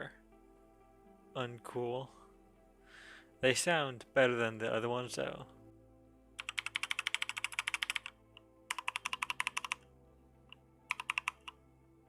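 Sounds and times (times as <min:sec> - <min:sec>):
mechanical keyboard typing: 0:06.4 - 0:09.8, 0:10.9 - 0:11.6.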